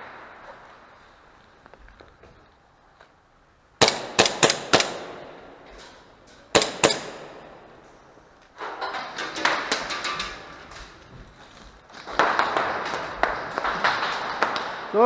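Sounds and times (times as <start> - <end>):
airsoft gun shots echoing: 3.8 - 8.4.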